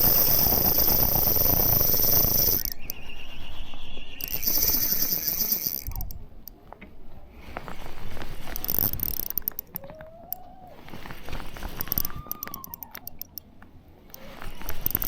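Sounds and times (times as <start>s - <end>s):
fishing reel whirring and clicking: 0.0s - 3.0s, 3.7s - 6.2s, 8.4s - 9.8s, 11.1s - 13.4s, 14.1s - 15.0s.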